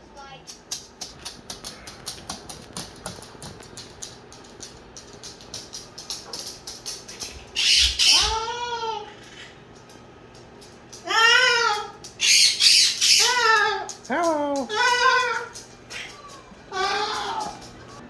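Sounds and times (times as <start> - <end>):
cockatoo screeching: 7.6 - 9.6, 11.0 - 14.1, 14.7 - 17.7.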